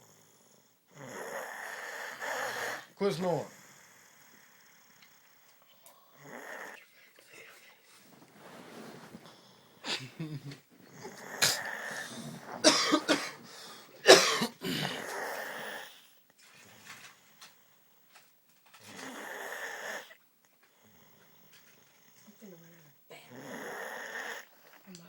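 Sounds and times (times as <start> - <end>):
woman snoring: 0.0 - 2.9, 6.0 - 6.8, 9.2 - 12.7, 14.6 - 16.0, 18.8 - 20.2, 22.2 - 24.9.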